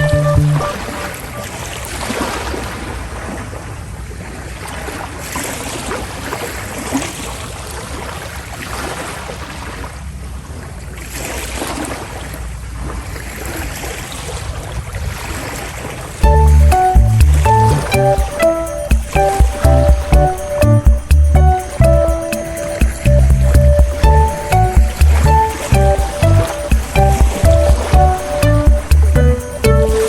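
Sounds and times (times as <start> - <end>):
sea water and waves rushing: 0.6 - 30.0
low engine rumble: 16.2 - 18.4, 19.1 - 22.2, 22.8 - 30.0.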